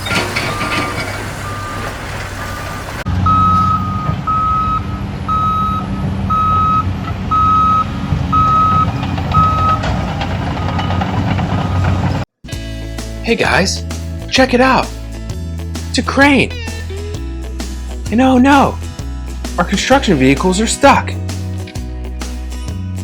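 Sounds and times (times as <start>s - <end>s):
reversing alarm beeping: 0.0s - 12.0s
low engine hum: 0.0s - 12.3s
louder higher alarm beeping: 2.5s - 9.9s.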